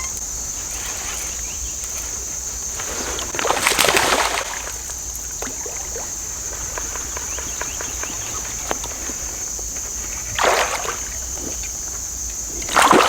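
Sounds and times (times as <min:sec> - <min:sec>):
water splashing and gurgling: 0:02.8 - 0:13.0.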